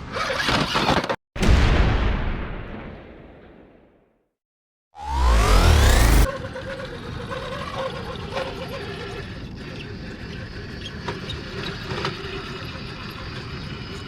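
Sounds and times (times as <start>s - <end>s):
loud intro effect: 5.0s - 6.3s.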